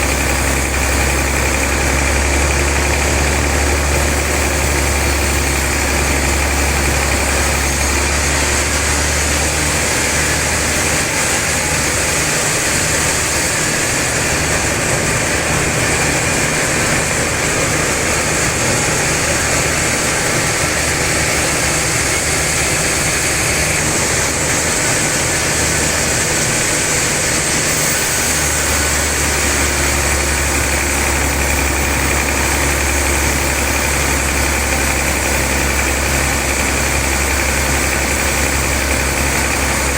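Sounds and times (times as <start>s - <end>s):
sawmill machinery droning: 0.0s - 39.9s.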